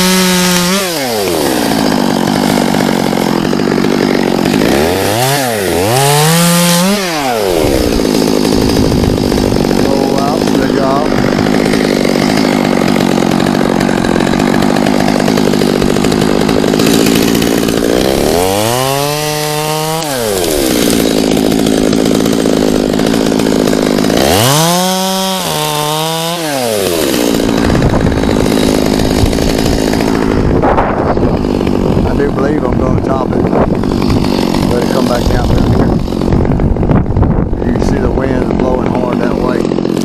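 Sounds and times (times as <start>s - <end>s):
chainsaw engine revving: 0.0s - 40.0s.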